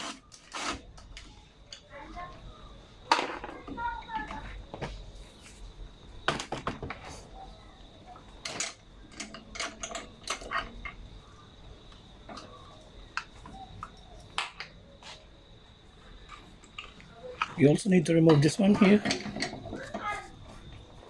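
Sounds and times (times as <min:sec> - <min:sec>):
clicks of tools and parts handled: 0:08.4 - 0:11.0.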